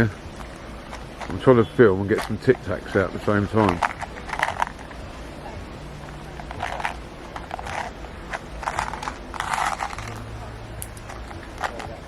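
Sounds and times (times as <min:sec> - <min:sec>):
mints rattling in plastic box: 0:03.2 - 0:05.0, 0:06.4 - 0:10.2, 0:11.0 - 0:12.0.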